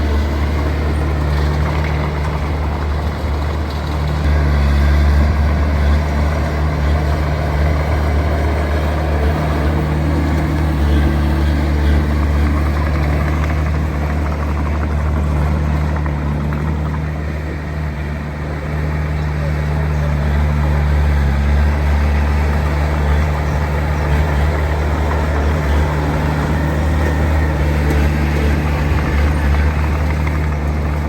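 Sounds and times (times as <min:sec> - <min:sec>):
heavy diesel engine droning: 0:00.0 - 0:31.0.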